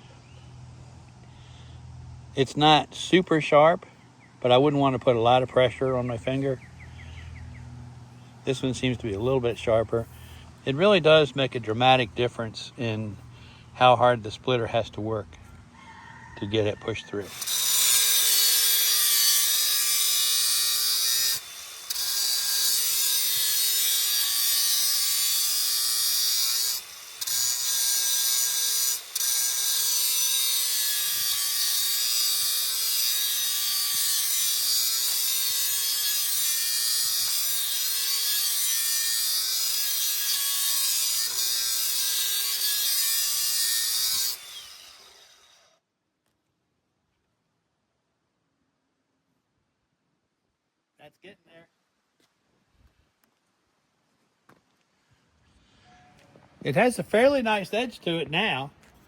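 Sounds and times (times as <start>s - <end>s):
grinder grinding steel: 8.5s - 15.1s, 16.6s - 45.7s.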